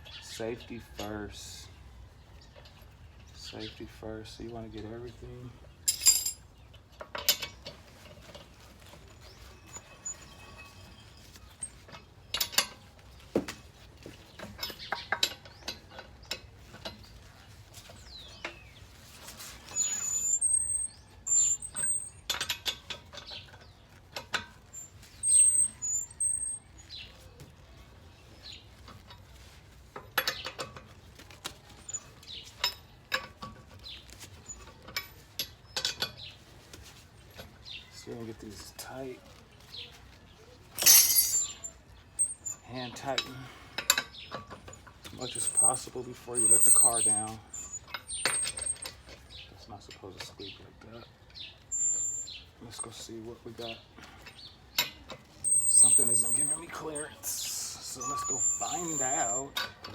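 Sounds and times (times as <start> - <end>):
birds chirping: 37.2 - 59.6.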